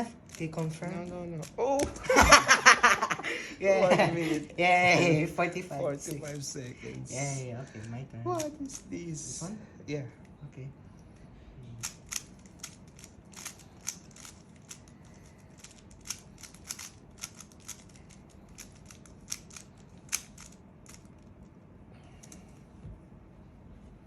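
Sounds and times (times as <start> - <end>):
puzzle cube clicking: 11.8 - 21.3.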